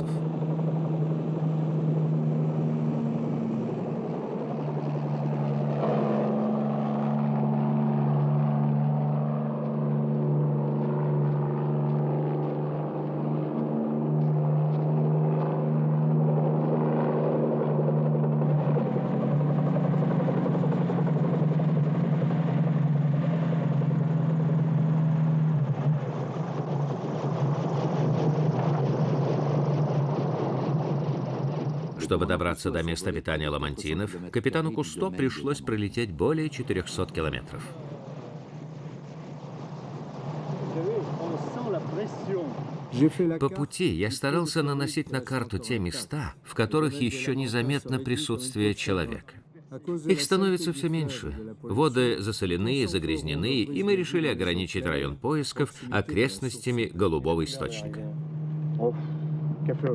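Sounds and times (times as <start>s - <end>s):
propeller aircraft engine drone: 0.0s - 43.4s, 57.4s - 59.9s.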